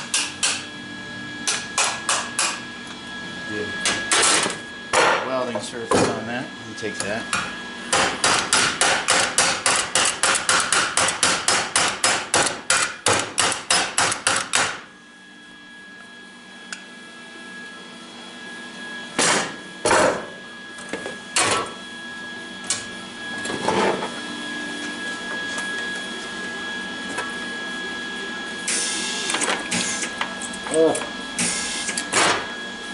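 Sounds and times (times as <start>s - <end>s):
hammer striking metal: 7.9s - 14.8s.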